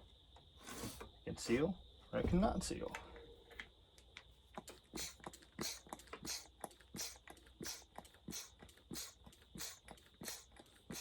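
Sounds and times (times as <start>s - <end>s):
hand pump hissing strokes: 4.6s - 11.0s.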